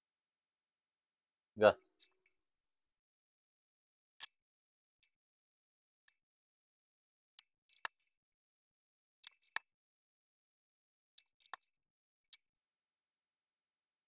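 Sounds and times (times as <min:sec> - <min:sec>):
small sharp clicks and taps: 0:07.4 - 0:08.1, 0:09.2 - 0:09.7, 0:11.2 - 0:11.7.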